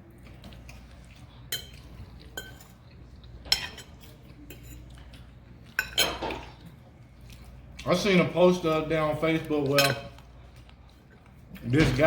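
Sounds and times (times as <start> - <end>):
kitchen utensils and dishes clinking: 1.5 - 2.8, 3.4 - 5.0, 5.7 - 6.7, 9.7 - 10.2.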